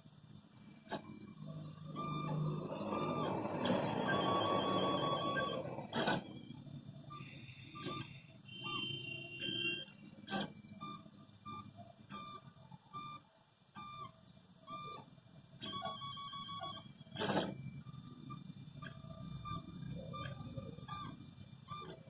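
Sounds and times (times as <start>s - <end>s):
stepper motors whining: 1.3s - 6.8s.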